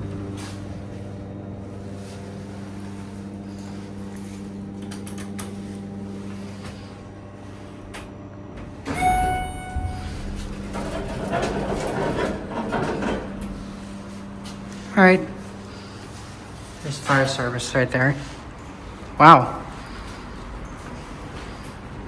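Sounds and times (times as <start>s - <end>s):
doors sliding open: 0.0s - 22.0s
elevator humming: 0.0s - 22.0s
elevator clunk: 7.6s - 22.0s
elevator chime: 8.8s - 21.9s.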